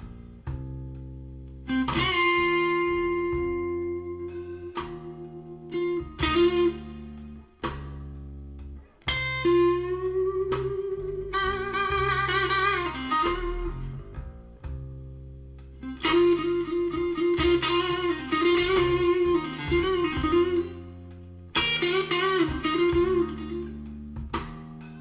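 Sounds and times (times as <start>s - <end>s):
bass and drums: 0.0s - 25.0s
electric guitar solo: 1.7s - 7.4s, 9.1s - 14.1s, 15.8s - 21.0s, 21.6s - 23.8s.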